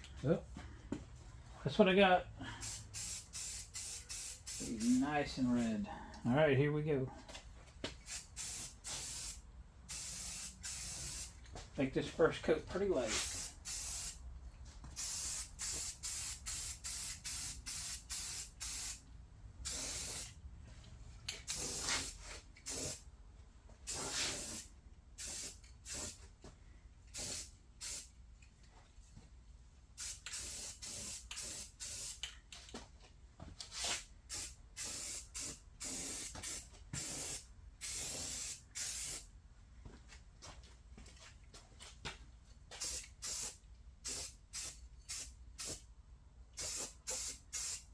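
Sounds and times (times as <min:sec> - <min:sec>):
spray paint hissing: 0:02.6 - 0:05.1, 0:08.0 - 0:11.4, 0:13.1 - 0:14.2, 0:15.0 - 0:19.0, 0:19.6 - 0:20.4, 0:21.4 - 0:23.0, 0:23.8 - 0:26.2, 0:27.1 - 0:28.1, 0:30.0 - 0:32.3, 0:33.8 - 0:39.3, 0:42.8 - 0:45.8, 0:46.6 - 0:47.9.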